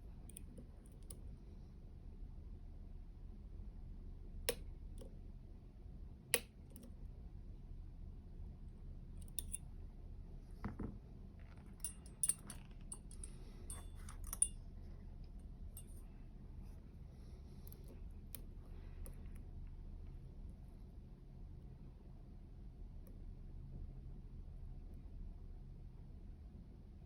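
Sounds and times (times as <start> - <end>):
low steady hum: 0.0 - 27.0
lock picking tools clicking and scraping: 9.2 - 9.6, 11.7 - 14.6.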